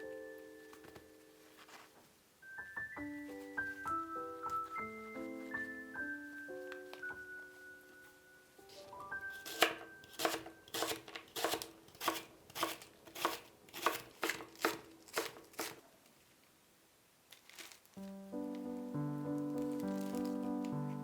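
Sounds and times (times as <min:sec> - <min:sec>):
knife chopping on cutting board: 0:09.4 - 0:15.8.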